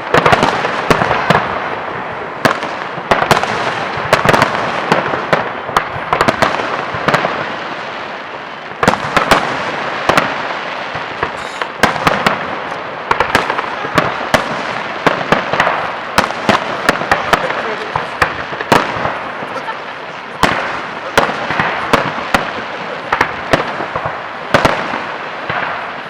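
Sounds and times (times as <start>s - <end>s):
fireworks crackling and banging: 0.0s - 26.0s.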